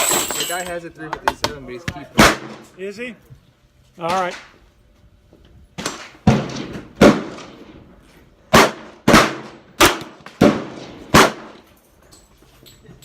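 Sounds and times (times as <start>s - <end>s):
echoing gunshots: 2.2s - 2.7s, 5.8s - 7.8s, 8.5s - 11.6s.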